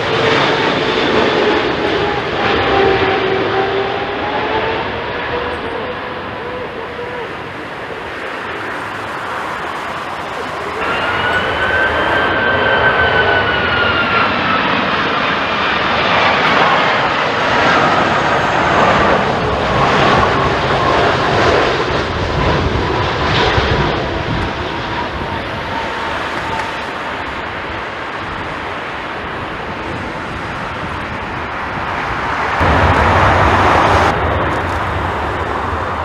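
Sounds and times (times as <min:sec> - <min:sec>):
jet airliner flying past: 0:00.0 - 0:36.0.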